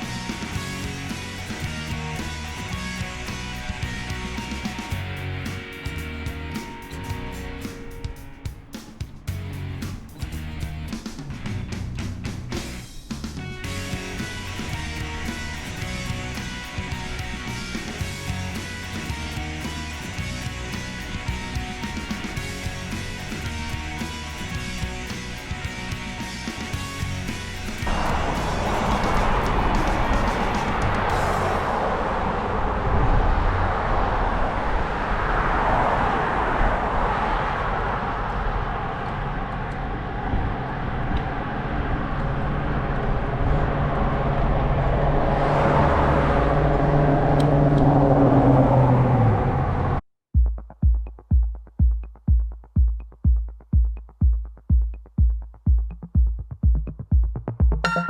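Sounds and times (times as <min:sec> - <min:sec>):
electronic music with kick drum: 0:00.0 - 0:11.0, 0:13.2 - 0:31.6, 0:50.4 - 0:58.0
traffic noise: 0:00.0 - 0:50.0
wind noise: 0:00.0 - 0:50.0
vehicle passing: 0:09.3 - 0:50.0.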